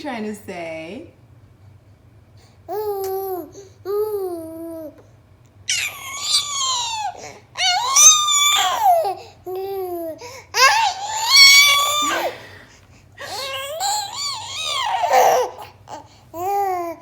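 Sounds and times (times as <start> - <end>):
baby cooing: 2.7 - 5.0, 5.7 - 12.6, 13.2 - 17.0
baby screeching: 5.7 - 9.2, 10.6 - 12.5, 13.2 - 16.9.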